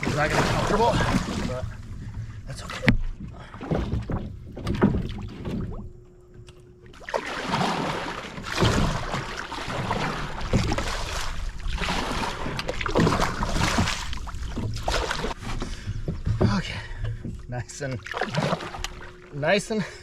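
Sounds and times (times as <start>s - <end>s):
paddle strokes in water: 0.0s - 19.5s.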